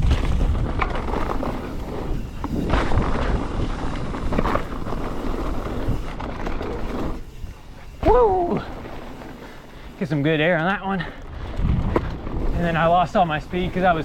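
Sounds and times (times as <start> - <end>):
bike knocking on rough ground: 0.0 - 7.2, 11.0 - 13.0
wind buffeting microphone: 0.0 - 9.9, 10.8 - 14.0
tyre and bike rattle: 0.0 - 14.0.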